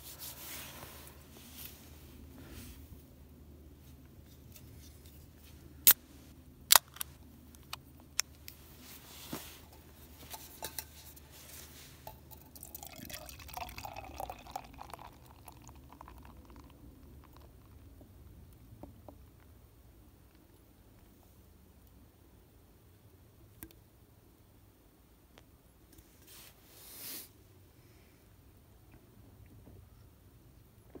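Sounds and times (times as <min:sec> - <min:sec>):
liquid pouring into container: 0:12.2 - 0:17.7.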